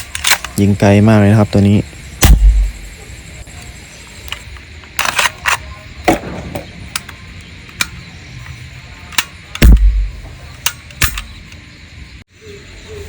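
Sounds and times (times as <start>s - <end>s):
air pistol firing: 2.2s - 3.0s, 6.1s - 7.1s, 9.6s - 10.3s, 10.9s - 11.4s.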